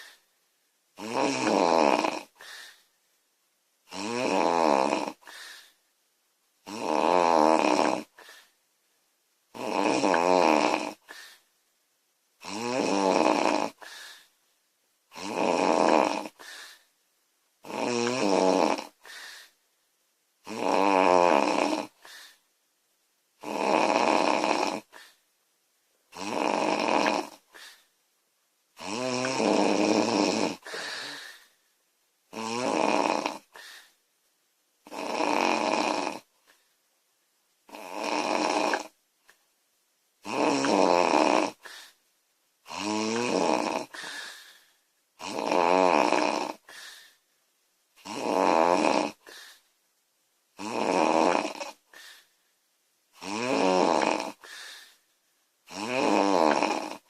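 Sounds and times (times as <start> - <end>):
faint breath sound: 0.0 - 0.4, 2.3 - 3.0, 5.2 - 5.9, 8.0 - 8.6, 11.0 - 11.5, 13.7 - 14.4, 16.3 - 17.0, 18.9 - 19.7, 21.9 - 22.5, 24.8 - 25.3, 27.4 - 28.0, 30.6 - 31.8, 33.4 - 34.0, 41.5 - 42.1, 43.8 - 44.9, 46.6 - 47.4, 49.1 - 49.8, 51.7 - 52.6, 54.2 - 55.2
woman snoring loudly: 1.0 - 2.7, 3.9 - 5.4, 6.6 - 8.3, 9.5 - 11.2, 12.4 - 14.0, 15.1 - 16.6, 17.6 - 19.1, 20.4 - 22.2, 23.4 - 25.2, 26.1 - 27.8, 28.8 - 31.4, 32.3 - 33.9, 34.8 - 36.3, 37.7 - 39.0, 40.2 - 41.9, 42.7 - 44.5, 45.2 - 46.9, 48.0 - 49.6, 50.6 - 52.1, 53.2 - 54.9, 55.7 - 57.0.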